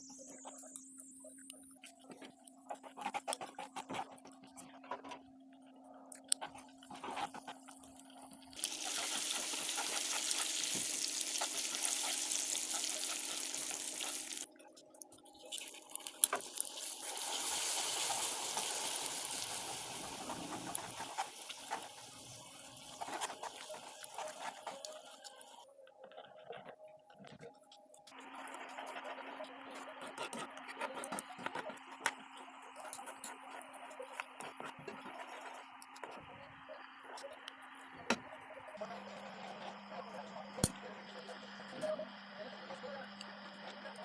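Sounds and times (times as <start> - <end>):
caramel sizzling in a hot pan: 8.6 - 14.5, 15.3 - 25.6.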